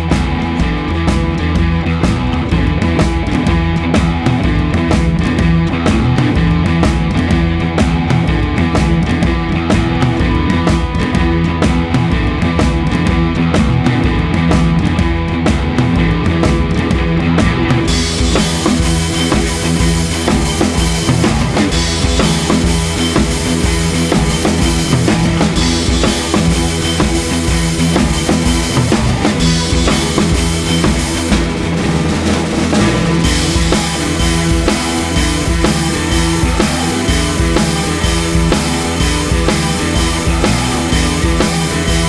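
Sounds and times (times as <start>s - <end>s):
rock music: 0.0s - 42.0s
cymbals: 17.9s - 42.0s.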